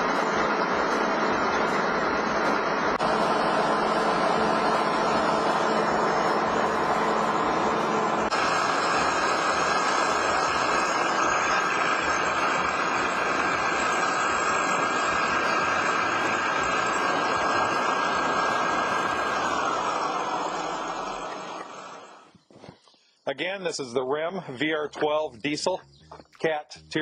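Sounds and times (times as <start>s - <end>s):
blower rushing air with whine: 0.0s - 22.5s
diesel engine running: 0.0s - 22.5s.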